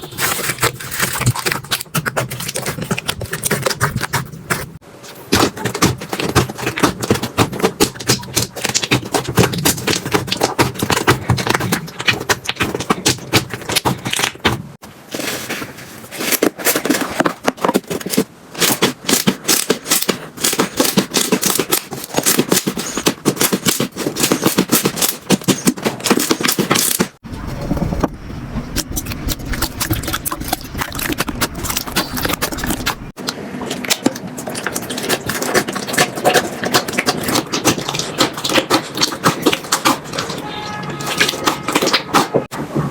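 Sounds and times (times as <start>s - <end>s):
slime crackling and popping: 17.5s - 27.2s, 29.0s - 42.4s.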